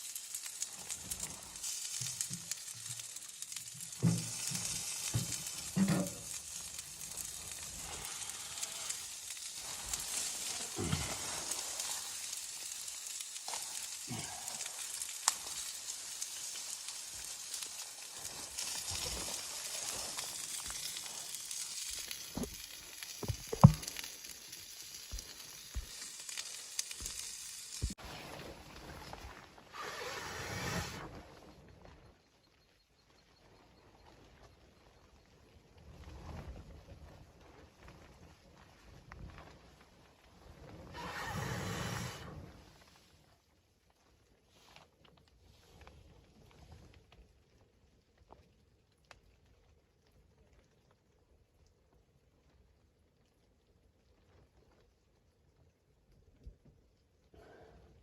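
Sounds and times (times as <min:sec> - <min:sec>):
small clicks and knocks: 0:22.3 - 0:24.2.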